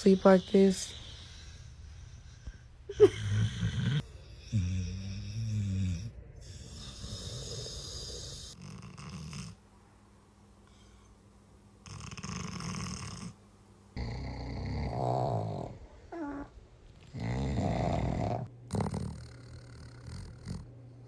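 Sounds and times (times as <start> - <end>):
dog snoring: 0.1 - 9.6, 11.8 - 13.4, 14.0 - 20.7
dog snort: 3.2 - 9.6, 11.8 - 13.4, 14.0 - 20.7.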